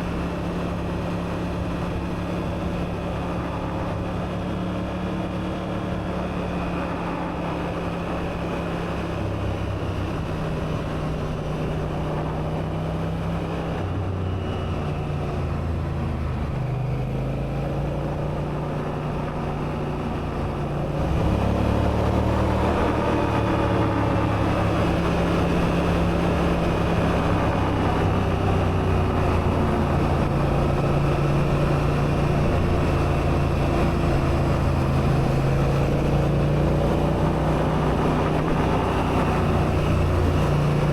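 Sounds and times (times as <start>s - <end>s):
motorcycle engine running: 13.5s - 40.9s.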